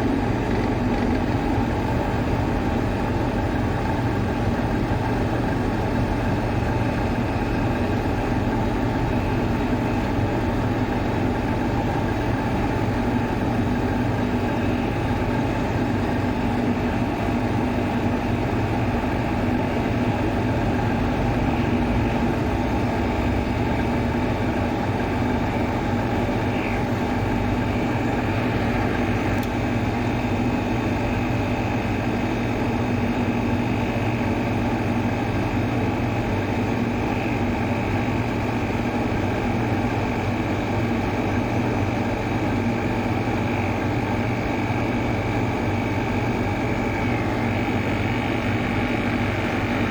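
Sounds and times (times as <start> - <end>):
fan motor humming: 0.0 - 49.9.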